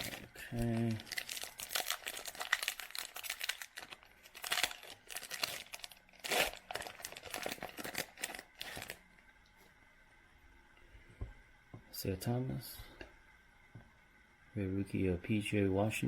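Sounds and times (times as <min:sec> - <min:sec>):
wrapper crinkling: 0:00.0 - 0:09.0
wrapper ripping: 0:00.0 - 0:09.0.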